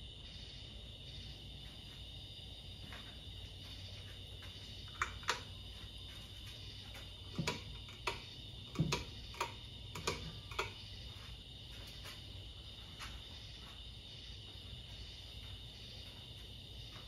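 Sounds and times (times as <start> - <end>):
ceiling fan humming: 0.0 - 17.0
sharp ticks and clicks: 4.9 - 5.6, 7.3 - 10.9.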